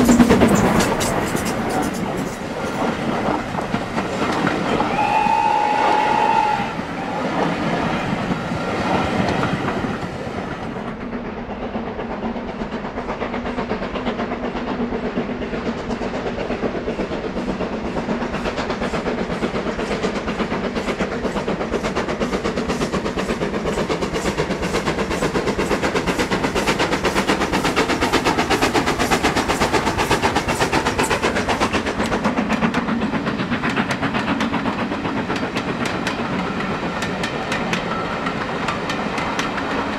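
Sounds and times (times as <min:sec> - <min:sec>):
steam locomotive exhaust beats: 0:00.0 - 0:39.9
steam locomotive whistle: 0:04.7 - 0:07.5.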